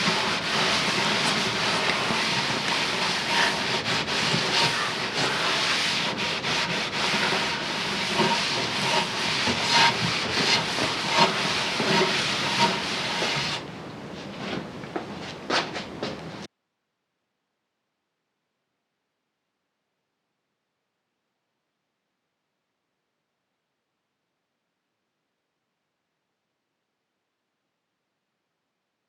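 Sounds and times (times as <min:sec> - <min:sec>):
cloth scrubbing wood: 0:00.0 - 0:16.5.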